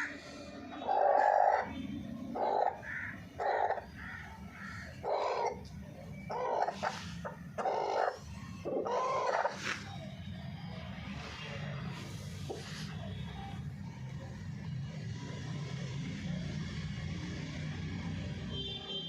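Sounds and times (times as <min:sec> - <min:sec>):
harsh caw-like bird calls: 0:00.0 - 0:05.6.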